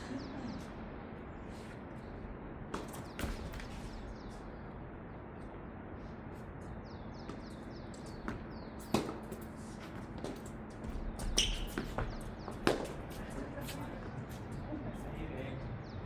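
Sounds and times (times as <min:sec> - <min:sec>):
birds chirping: 0:00.0 - 0:09.8, 0:10.4 - 0:16.0
steady outdoor noise: 0:00.0 - 0:16.0
tennis ball impacts: 0:08.0 - 0:09.5, 0:11.4 - 0:13.2.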